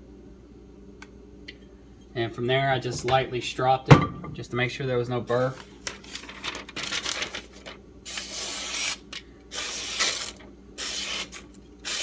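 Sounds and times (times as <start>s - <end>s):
knife blade scraping: 8.1s - 12.0s.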